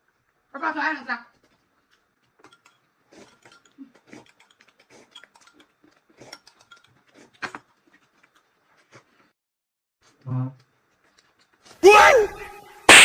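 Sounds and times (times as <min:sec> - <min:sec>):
person chewing and smacking: 0:01.4 - 0:09.3, 0:10.0 - 0:11.8.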